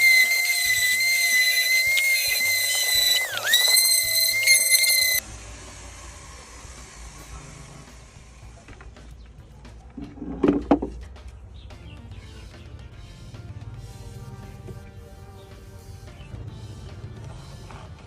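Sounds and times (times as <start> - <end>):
high-pitched test tone: 0.0 - 5.2.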